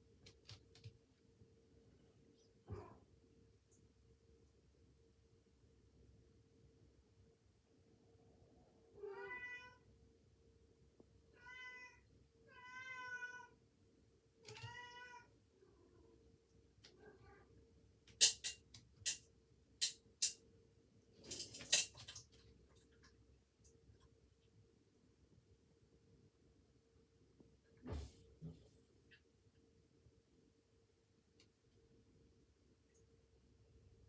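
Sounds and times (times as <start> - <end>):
cat meowing: 9.0 - 9.8, 11.3 - 13.6, 14.4 - 15.3.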